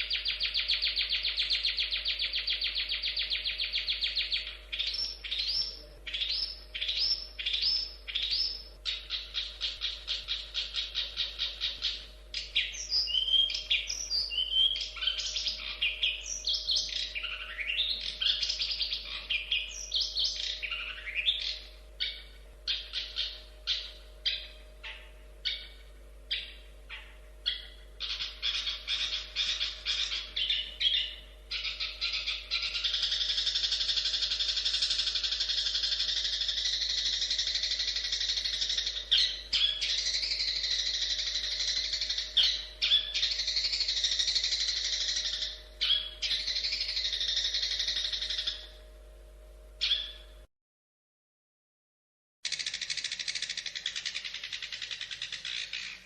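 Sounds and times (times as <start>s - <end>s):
bird singing: 0.0s - 49.1s, 49.8s - 50.5s, 52.4s - 56.0s.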